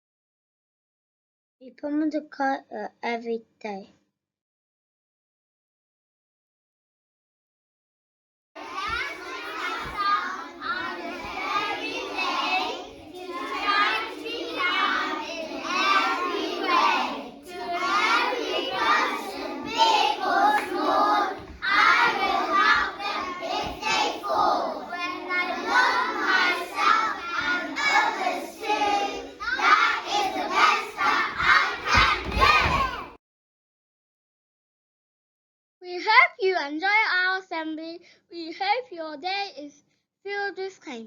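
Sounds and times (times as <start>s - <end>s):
many children talking: 8.6s - 33.2s.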